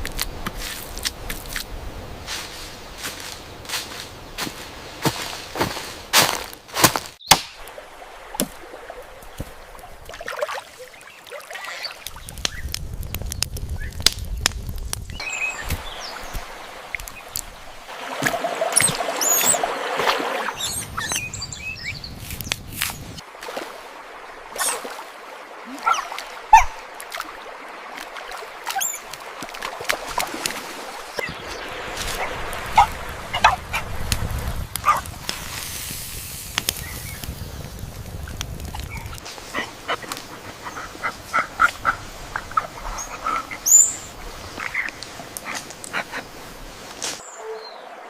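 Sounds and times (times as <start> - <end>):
chirping calls: 18.4 - 22.2, 40.5 - 45.0, 47.2 - 48.0.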